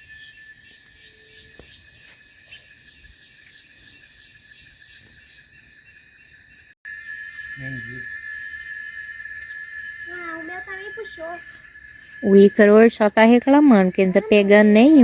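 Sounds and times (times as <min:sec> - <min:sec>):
insects chirping in rapid pulses: 0:00.0 - 0:15.0
steady high insect trill: 0:00.0 - 0:15.0.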